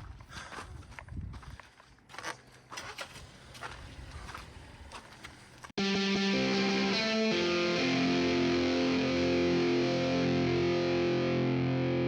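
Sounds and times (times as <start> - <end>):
distorted electric guitar chords: 5.8 - 12.0.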